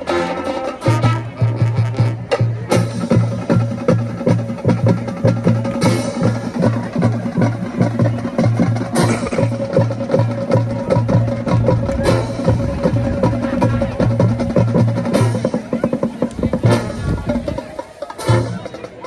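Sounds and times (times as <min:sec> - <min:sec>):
marching band playing: 0:00.0 - 0:19.0
steady drum beat with clicks: 0:00.7 - 0:19.0.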